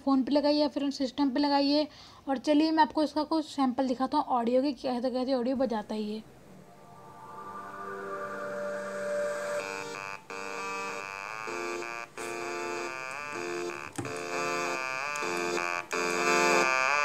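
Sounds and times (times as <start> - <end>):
melody through speakers: 6.6 - 17.0.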